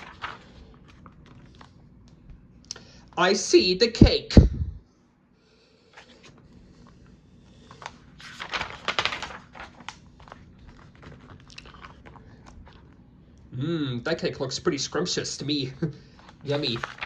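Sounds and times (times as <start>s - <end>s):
book pages turning: 0.0s - 2.2s, 5.9s - 13.0s, 16.2s - 17.0s.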